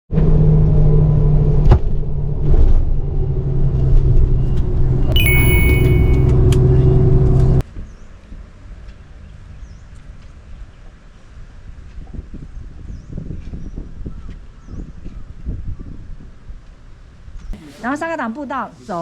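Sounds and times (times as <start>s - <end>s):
brief high tone: 5.2s - 6.3s.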